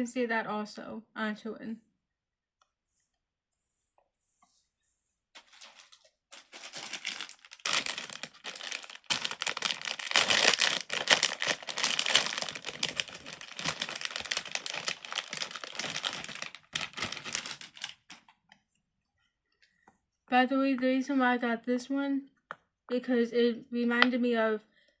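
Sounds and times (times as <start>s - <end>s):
plastic toys crinkling and clicking: 5.4s - 18.6s.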